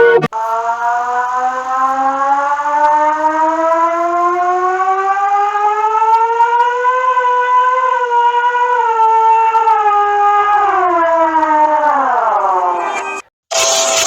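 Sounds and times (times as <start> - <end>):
siren winding up: 0.0 - 14.0.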